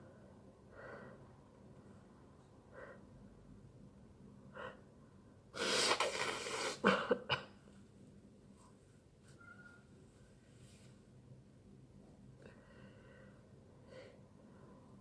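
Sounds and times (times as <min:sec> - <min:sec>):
sharp snorts: 0:05.6 - 0:06.9
loud sneeze: 0:05.6 - 0:07.2.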